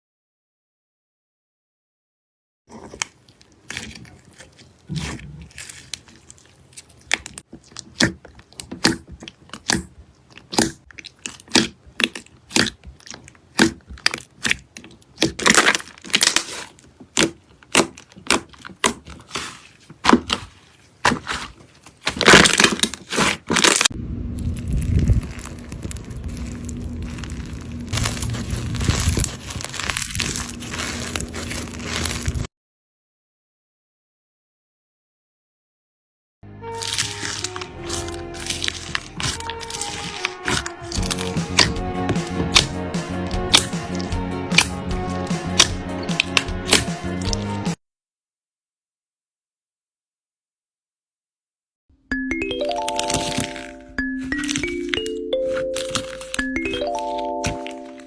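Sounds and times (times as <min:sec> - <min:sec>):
slime squishing: 0:02.7 - 0:32.5, 0:36.7 - 0:47.8, 0:52.8 - 0:58.0
slime clicking and popping: 0:06.9 - 0:20.4, 0:36.8 - 0:44.8, 0:45.5 - 0:47.4, 0:54.2 - 0:57.6.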